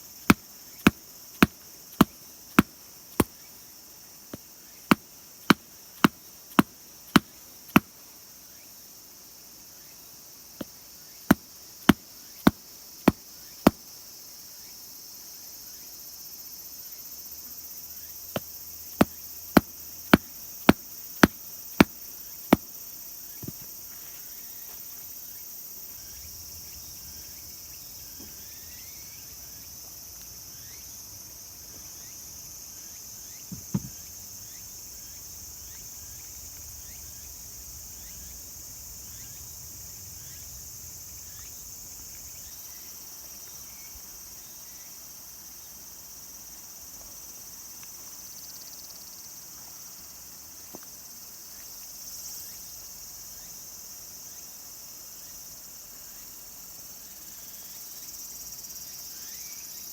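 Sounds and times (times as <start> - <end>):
insects chirring: 0.0 - 59.9
sharp knocks: 33.5 - 34.0.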